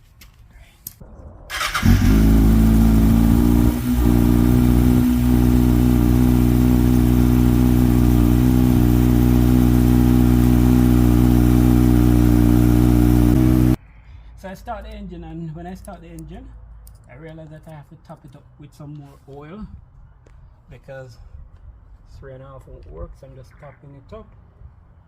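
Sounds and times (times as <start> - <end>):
motorcycle engine idling: 1.5 - 13.8.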